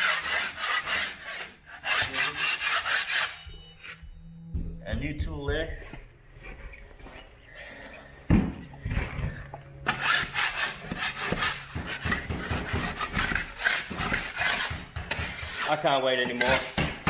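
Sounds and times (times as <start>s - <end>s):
hand saw cutting plasterboard: 0.0s - 3.5s, 9.8s - 17.0s.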